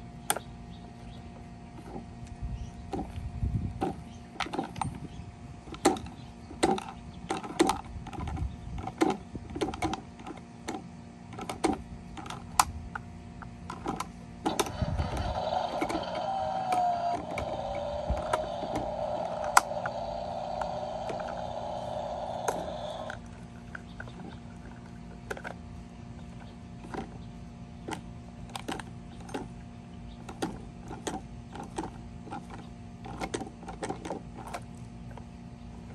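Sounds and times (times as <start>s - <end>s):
steady mechanical whir: 0.0s - 35.9s
plastic toy clicks and knocks: 5.7s - 12.7s, 13.7s - 24.3s, 30.3s - 34.7s.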